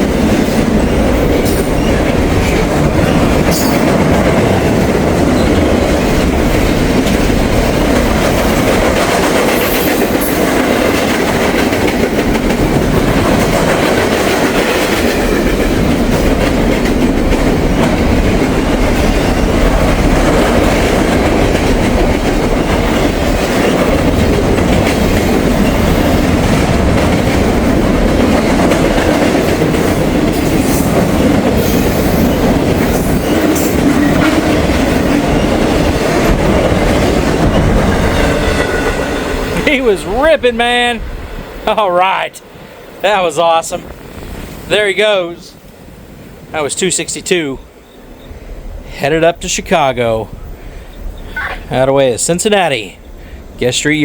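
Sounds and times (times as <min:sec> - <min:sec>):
freight train wheels clattering: 0:00.0 - 0:41.6.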